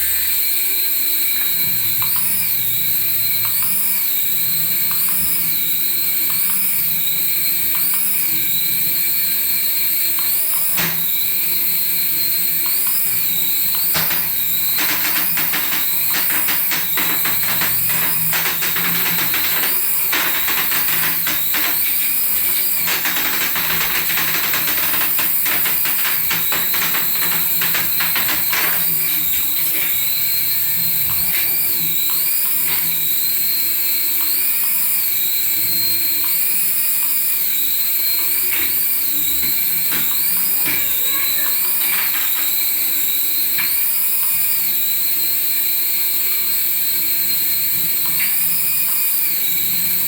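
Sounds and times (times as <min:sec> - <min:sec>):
toy electric motor whining: 0:00.0 - 0:50.0
dense rattle: 0:14.0 - 0:28.9.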